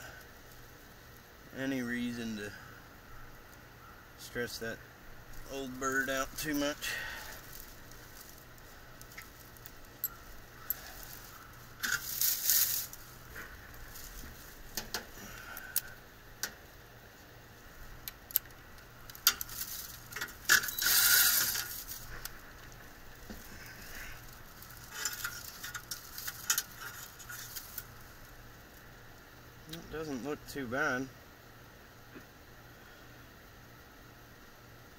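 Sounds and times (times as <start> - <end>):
metal scraping: 5.5 - 15.0, 19.3 - 22.4
metal tools clicking and rattling: 9.0 - 13.0, 19.1 - 22.3, 24.6 - 28.0.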